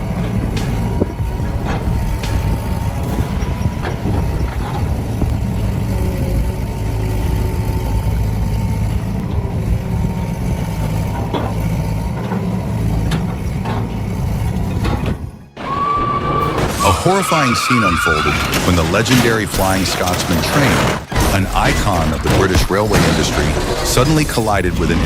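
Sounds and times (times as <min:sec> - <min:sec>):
clicks and knocks: 0:00.0 - 0:06.0
heavy vehicle engine running: 0:00.0 - 0:25.0.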